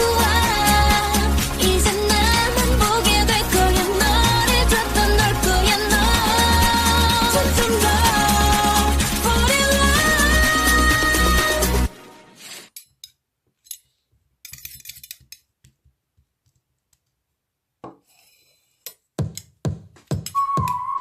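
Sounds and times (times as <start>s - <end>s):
music with heavy beats: 0.0s - 11.9s, 19.2s - 21.0s
song: 0.0s - 12.3s
small clicks and clinks: 12.8s - 15.8s.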